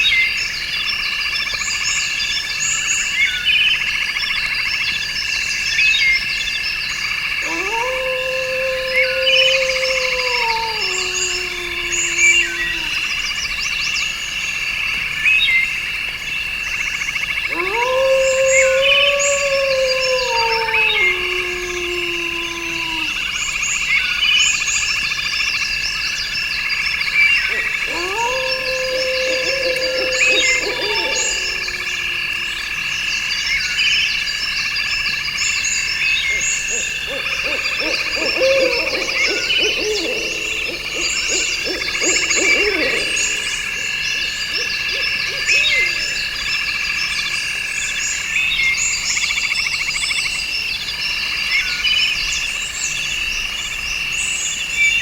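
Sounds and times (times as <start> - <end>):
insects trilling: 0.0 - 55.0
low animal calls: 7.3 - 13.5, 17.3 - 23.4, 27.2 - 33.2, 36.0 - 46.8.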